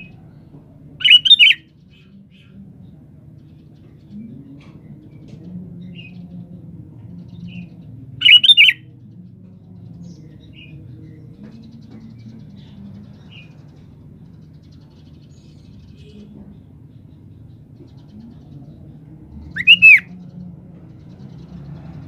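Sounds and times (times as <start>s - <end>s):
bird chirping: 1.0s - 2.6s, 7.2s - 8.8s, 10.0s - 20.4s.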